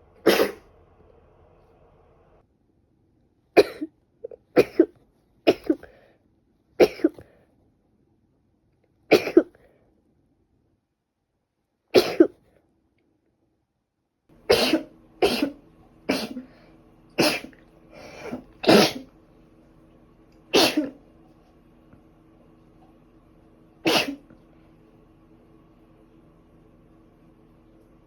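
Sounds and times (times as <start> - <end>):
person sneezing: 0.2 - 0.7, 14.5 - 16.6, 17.2 - 19.1, 20.5 - 21.0, 23.8 - 24.4.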